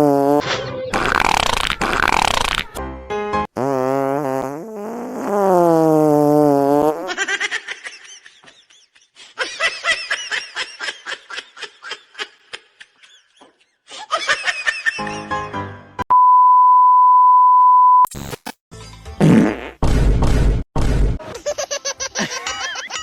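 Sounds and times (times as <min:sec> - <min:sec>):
pitched fart sound: 0:00.0 - 0:02.8, 0:03.5 - 0:07.2, 0:19.2 - 0:21.2
people laughing: 0:21.3 - 0:23.0.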